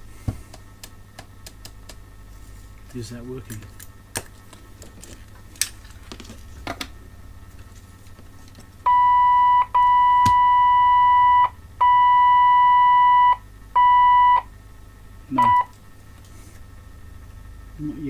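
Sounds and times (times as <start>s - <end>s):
electronic test tone beeping: 8.9s - 14.5s, 15.3s - 15.8s.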